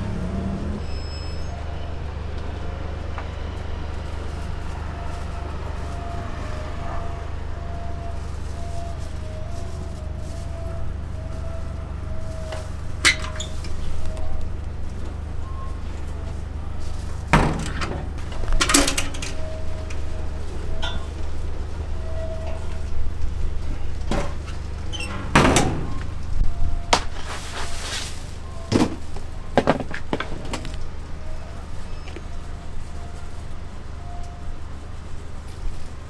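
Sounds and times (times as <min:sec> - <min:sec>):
kitchen knocks and clatters: 0:17.4 - 0:20.1, 0:24.0 - 0:26.4, 0:28.7 - 0:30.8.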